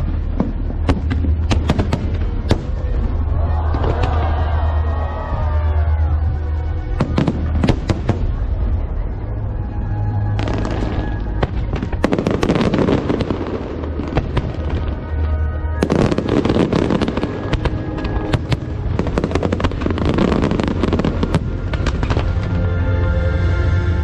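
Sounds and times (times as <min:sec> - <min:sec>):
fireworks bursting and crackling: 0:00.0 - 0:05.8, 0:06.8 - 0:09.2, 0:10.4 - 0:22.6
music: 0:00.0 - 0:24.0.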